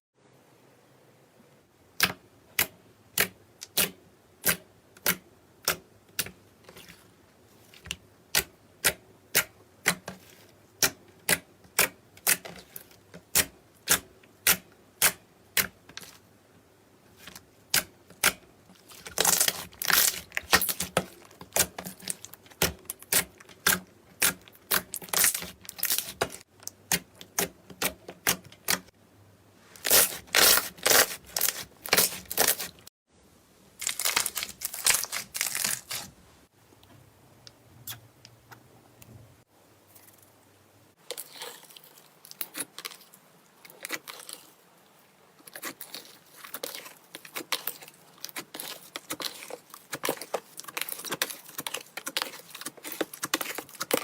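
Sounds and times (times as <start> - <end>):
slime popping and crackling: 17.7 - 27.4, 29.8 - 32.8, 33.8 - 36.1.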